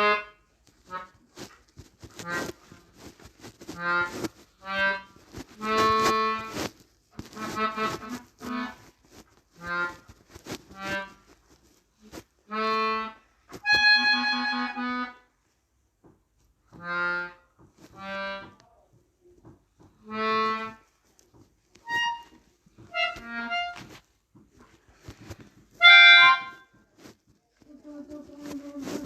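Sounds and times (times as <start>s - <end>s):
melodica playing short notes: 21.8s - 23.9s, 25.8s - 26.6s.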